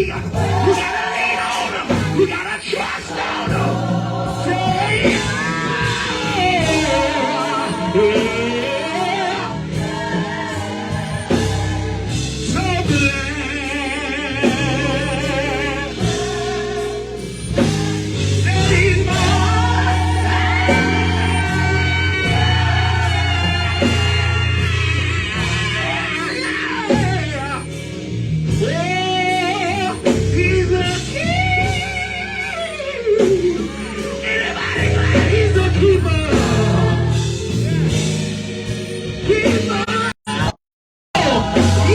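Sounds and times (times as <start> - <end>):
band with steady bass: 0.0 - 40.6, 41.2 - 41.9
voices singing gospel: 0.0 - 40.6, 41.2 - 41.9.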